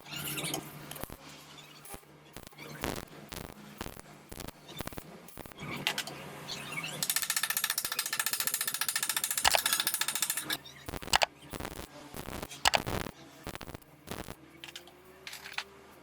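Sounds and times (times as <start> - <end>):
welding arc crackling: 1.9 - 5.6, 7.0 - 14.9.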